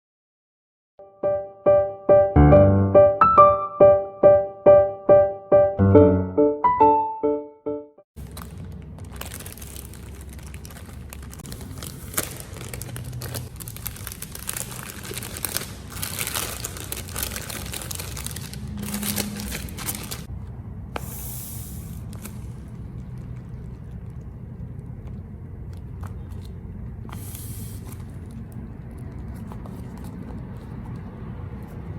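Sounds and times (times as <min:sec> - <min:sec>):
piano notes: 0:01.0 - 0:08.0, 0:16.3 - 0:20.3
paper and plastic crinkling: 0:08.2 - 0:20.3, 0:22.0 - 0:31.8
hiss: 0:21.0 - 0:22.3, 0:27.1 - 0:27.9.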